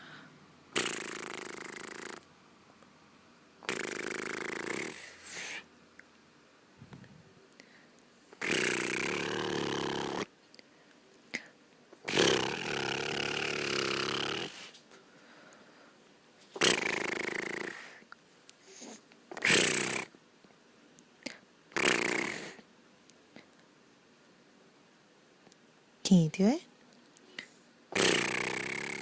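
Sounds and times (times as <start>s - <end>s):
person making gravelly throat noises: 8.4s - 10.2s, 12.1s - 14.5s, 16.6s - 17.9s, 28.0s - 29.0s.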